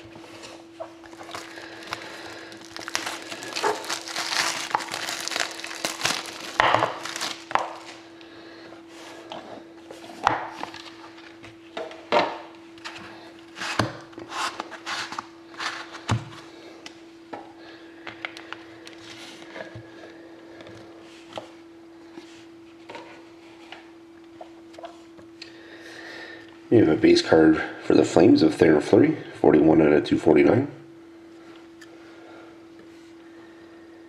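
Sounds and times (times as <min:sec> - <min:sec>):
low electrical hum: 0:00.0 - 0:34.0
hands handling cards and wrappers: 0:01.0 - 0:08.0.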